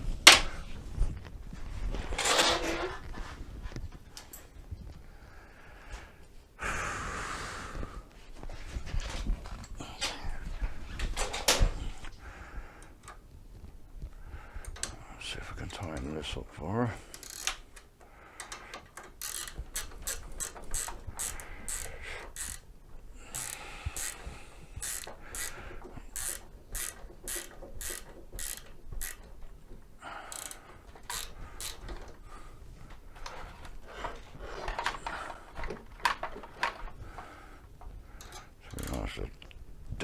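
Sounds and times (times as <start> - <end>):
ratchet wrench clicking: 17.1 - 17.6, 19.0 - 22.7, 23.3 - 29.3, 30.3 - 31.9.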